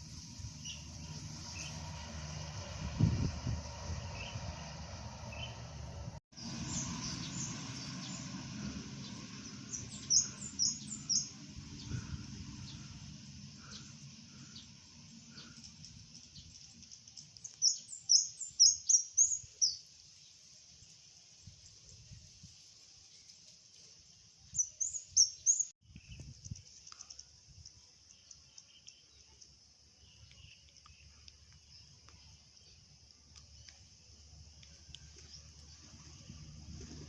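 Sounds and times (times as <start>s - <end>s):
low rumble of passing traffic: 0.0s - 19.8s, 30.6s - 37.0s
small bird chirping: 6.4s - 22.4s, 24.4s - 36.0s.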